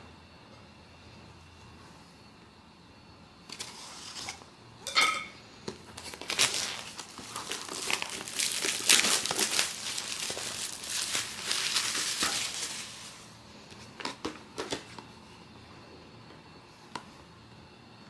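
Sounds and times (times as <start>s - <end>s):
packaging crinkling: 5.8s - 14.9s.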